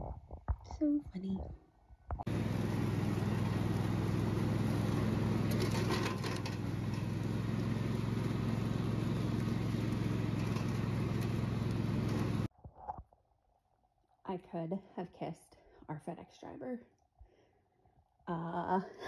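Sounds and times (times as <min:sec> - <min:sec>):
engine droning: 0:02.3 - 0:12.5.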